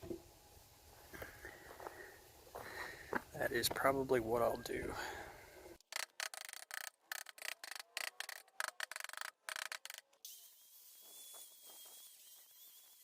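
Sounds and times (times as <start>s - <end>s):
faint steady hiss: 0.0s - 5.8s.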